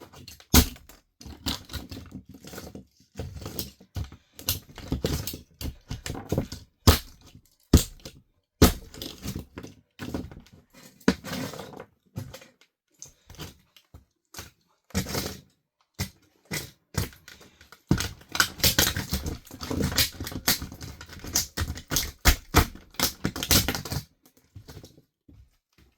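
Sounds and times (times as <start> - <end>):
plastic toy cracking and crunching: 0.2 - 2.5, 3.2 - 9.6, 16.0 - 24.1.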